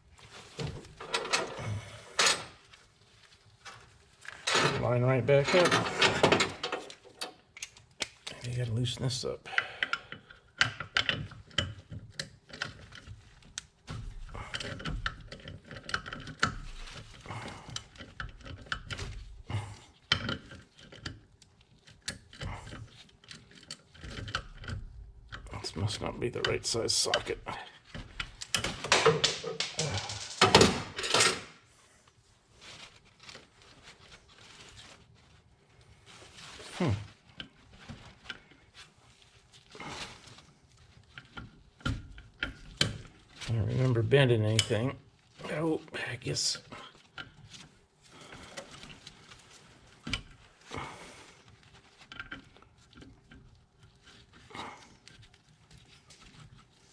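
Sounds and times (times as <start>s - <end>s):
soft rustle: 0.0s - 1.0s, 2.5s - 4.4s, 31.6s - 44.1s, 45.0s - 56.9s
metal tools clinking on fitting: 28.5s - 31.5s.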